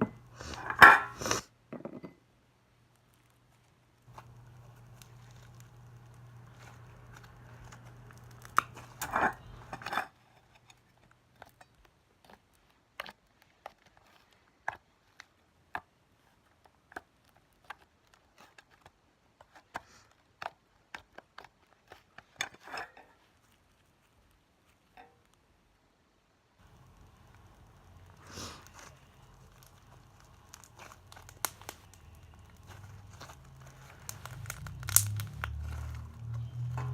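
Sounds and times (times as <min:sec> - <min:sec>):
low steady hum: 0:01.8 - 0:11.7, 0:26.6 - 0:36.9
slime handling noise: 0:03.0 - 0:09.8, 0:26.6 - 0:36.9
sticky slime clicks and pops: 0:34.0 - 0:35.6.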